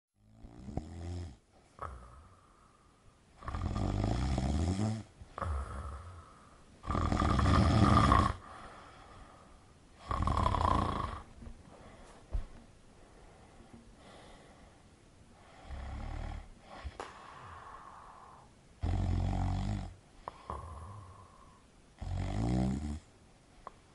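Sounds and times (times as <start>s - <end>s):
person snoring: 0.3s - 2.8s, 3.4s - 9.1s, 10.0s - 11.4s, 15.4s - 23.1s.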